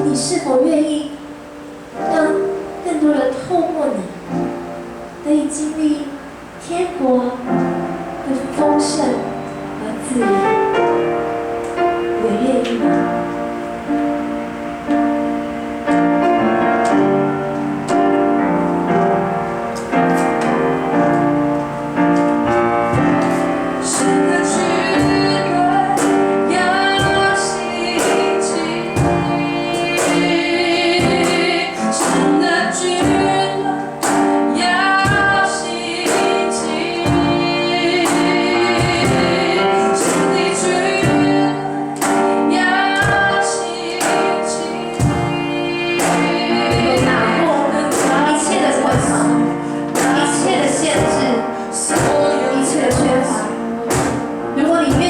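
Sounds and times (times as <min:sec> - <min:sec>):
woman singing gospel song: 0:00.0 - 0:01.4, 0:05.2 - 0:10.8, 0:12.1 - 0:13.6, 0:22.9 - 0:55.0
band playing: 0:00.0 - 0:55.0.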